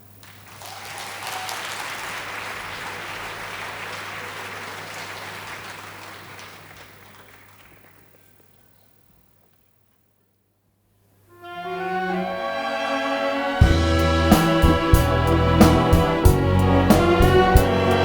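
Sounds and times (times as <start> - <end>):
applause: 0.0 - 8.5.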